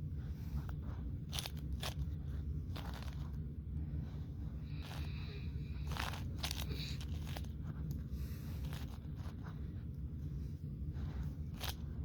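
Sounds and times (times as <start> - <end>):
steady low hum: 0.0 - 12.0
puzzle cube clicking and scraping: 1.3 - 3.4, 5.8 - 7.6, 11.5 - 11.9.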